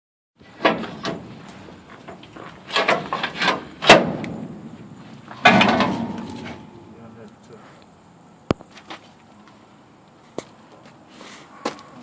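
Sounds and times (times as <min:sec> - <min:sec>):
knocks and clunks: 0:00.4 - 0:06.9
sharp ringing bang: 0:05.4 - 0:07.1.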